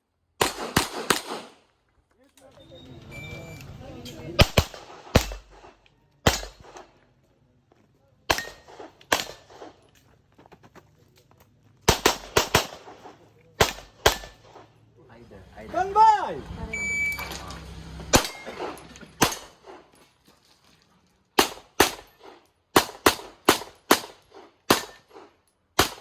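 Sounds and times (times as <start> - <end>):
pistol shots: 0.4 - 1.6, 4.4 - 7.0, 8.3 - 9.8, 11.9 - 14.7, 18.1 - 19.9, 21.4 - 26.0.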